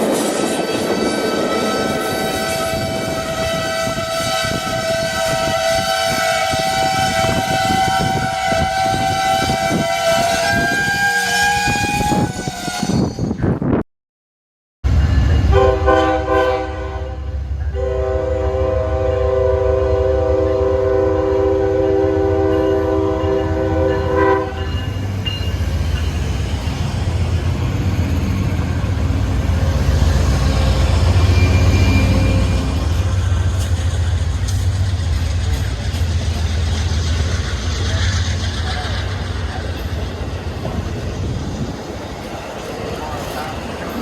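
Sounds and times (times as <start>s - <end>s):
passing train rumble: 0.0s - 13.8s, 14.8s - 44.0s
train horn chord: 1.4s - 12.8s, 15.5s - 24.9s.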